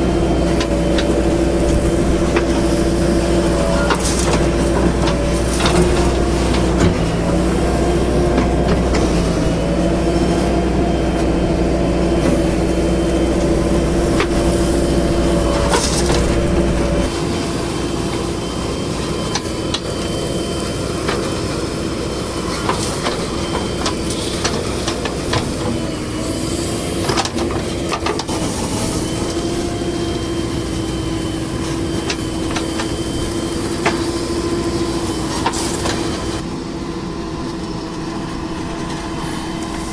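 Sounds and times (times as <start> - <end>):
heavy diesel engines running: 0.0 - 39.9.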